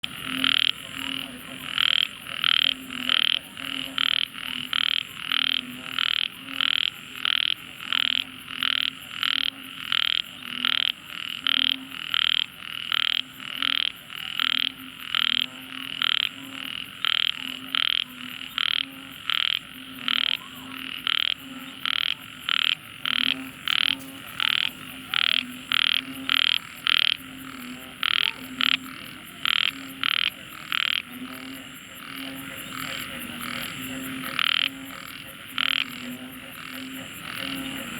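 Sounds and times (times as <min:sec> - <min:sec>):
frog calling shrill notes: 0:00.0 - 0:36.0.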